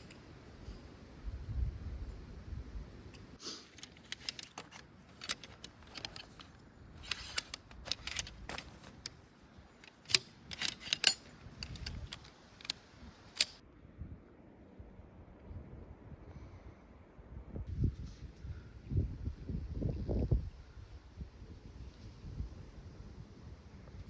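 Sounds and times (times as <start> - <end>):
small metal objects clinking: 9.8 - 12.3.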